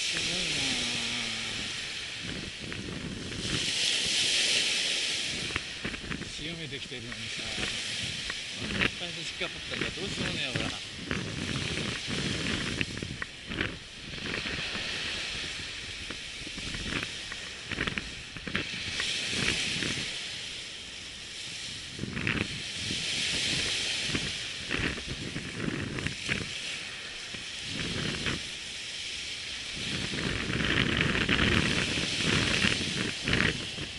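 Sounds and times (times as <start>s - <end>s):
surf washing on beach: 0.0s - 33.9s
wind buffeting microphone: 0.0s - 33.9s.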